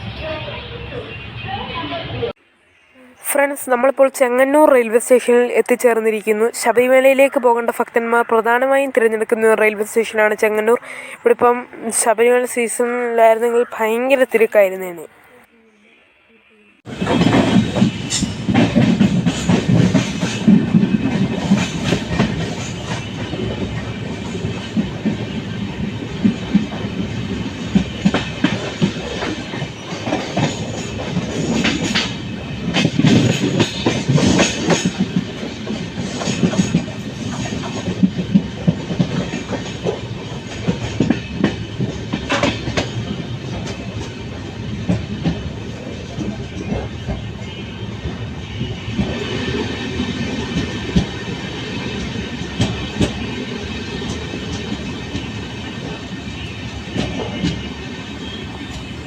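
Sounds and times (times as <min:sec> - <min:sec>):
passenger train rumble: 0:00.0 - 0:02.4, 0:03.0 - 0:59.0
wheels clattering over rail joints: 0:16.9 - 0:47.6.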